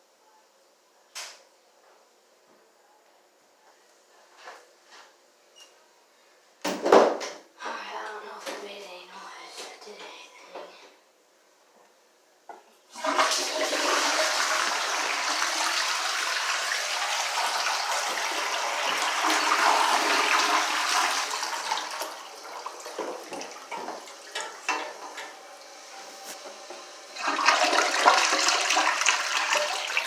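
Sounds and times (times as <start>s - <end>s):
toilet flushing: 12.9s - 30.0s.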